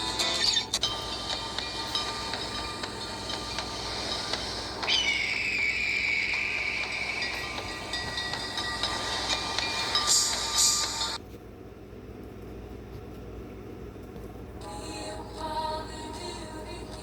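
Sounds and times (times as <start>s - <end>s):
electronic ringtone: 0.0s - 11.2s.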